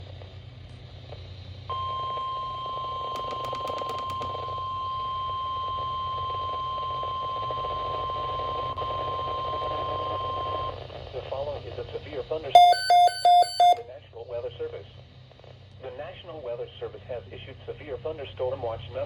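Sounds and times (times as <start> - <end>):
steady high warning beep: 1.7 - 10.8, 12.6 - 13.8.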